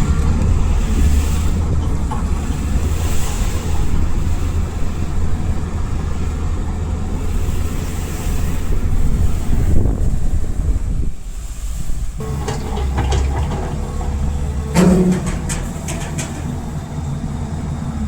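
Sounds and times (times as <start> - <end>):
diesel engine rumbling: 0.0 - 18.0.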